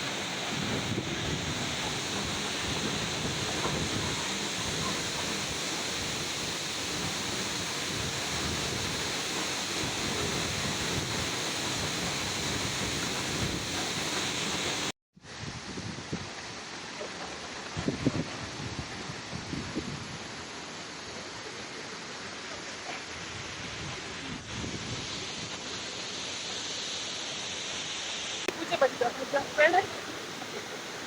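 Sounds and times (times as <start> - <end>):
waterfall rushing: 0.0 - 14.9, 25.1 - 31.0.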